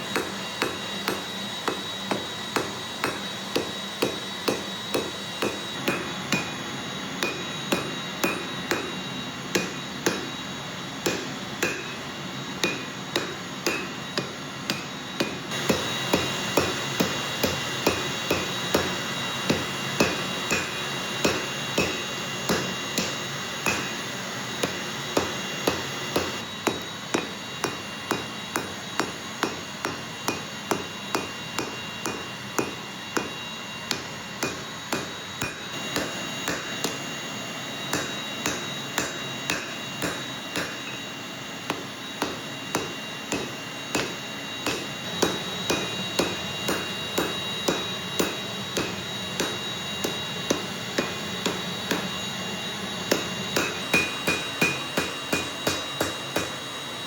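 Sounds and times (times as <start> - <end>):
hammer blows on steel: 11.0 - 52.4, 53.0 - 56.6.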